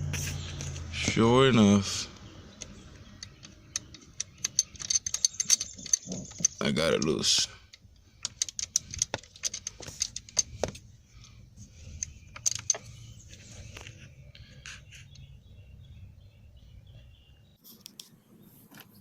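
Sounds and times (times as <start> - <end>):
screwdriver and screw clinking: 3.2 - 7.2, 8.2 - 10.7.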